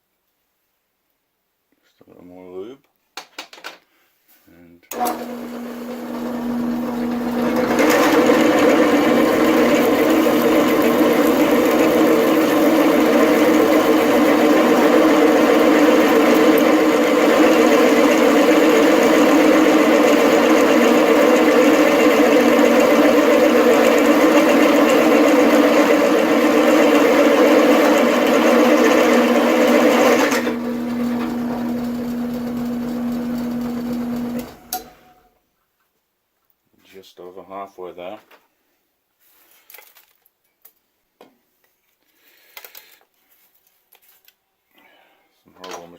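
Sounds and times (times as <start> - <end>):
drill press motor humming: 4.9 - 35.3
drill bit cutting steel: 5.0 - 34.9.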